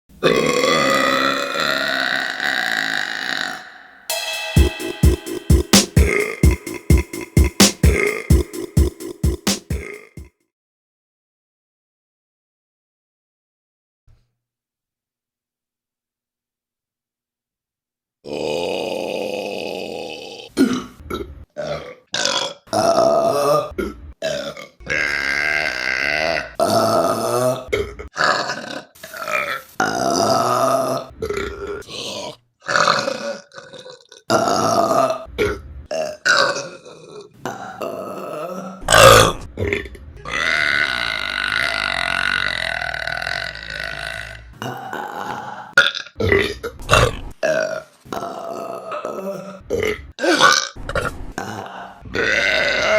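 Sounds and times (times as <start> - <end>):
women burping: 0.2 - 3.7.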